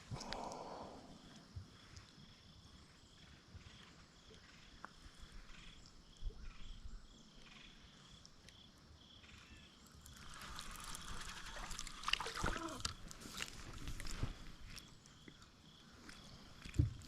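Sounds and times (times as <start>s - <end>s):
quiet chirping: 0.3s - 12.0s.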